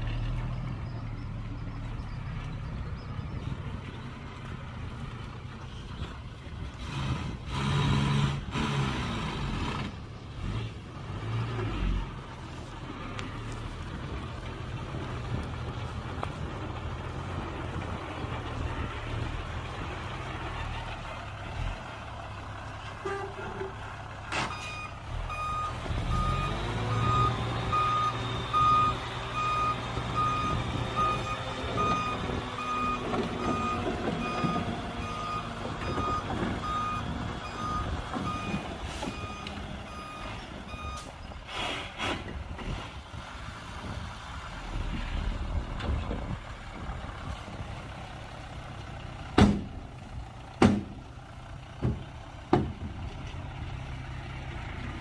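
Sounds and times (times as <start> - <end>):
diesel engine revving: 0.0 - 55.0
reversing alarm beeping: 24.5 - 41.2.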